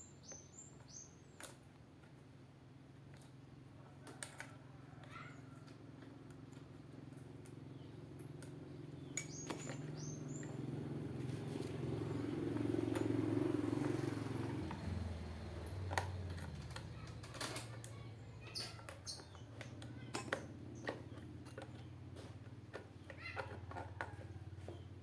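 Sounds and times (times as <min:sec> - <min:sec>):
bird chirping: 0:00.0 - 0:01.4, 0:08.8 - 0:12.4, 0:17.9 - 0:20.1
engine humming: 0:05.8 - 0:25.0.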